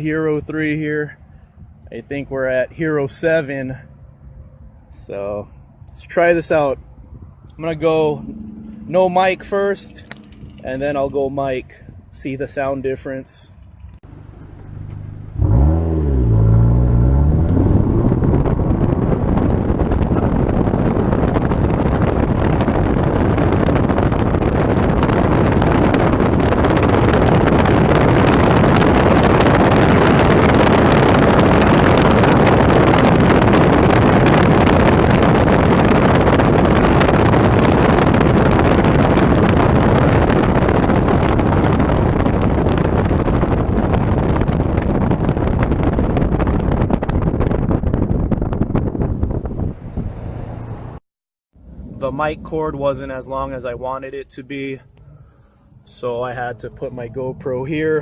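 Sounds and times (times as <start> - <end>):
wind and road noise: 0.0 - 58.0
car engine revving: 6.4 - 12.1, 13.6 - 46.4, 47.0 - 51.0.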